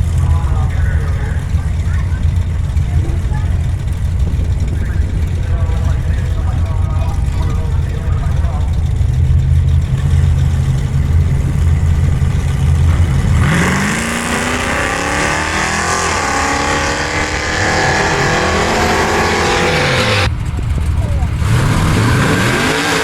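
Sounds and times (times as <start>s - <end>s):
car engine accelerating hard: 0.0s - 23.0s
tyre and wind noise: 16.3s - 22.6s.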